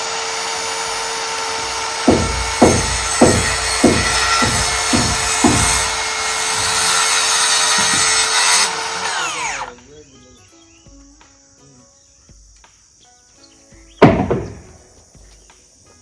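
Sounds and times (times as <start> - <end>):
power tool whining: 0.0 - 9.8
sharp knocks: 1.7 - 8.3, 14.0 - 15.0.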